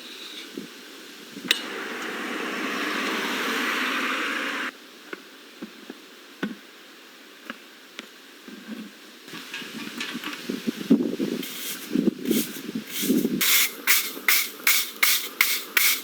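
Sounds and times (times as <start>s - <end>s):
rushing hiss: 1.2s - 4.7s, 9.3s - 16.0s.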